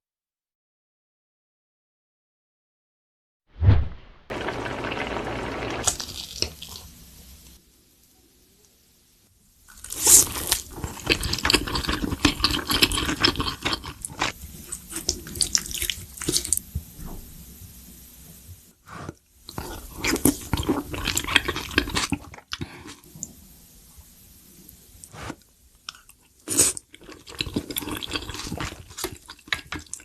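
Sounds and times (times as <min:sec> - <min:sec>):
crackly mouth noises: 0:09.7 - 0:16.8
slurping noodle soup: 0:18.8 - 0:23.2, 0:25.0 - 0:25.5, 0:26.4 - 0:30.0.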